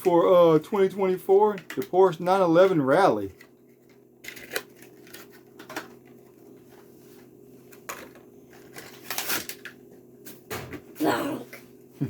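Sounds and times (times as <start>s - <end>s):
steady low hum: 0.0s - 12.0s
plastic packaging crackling: 3.8s - 6.0s, 8.6s - 9.7s.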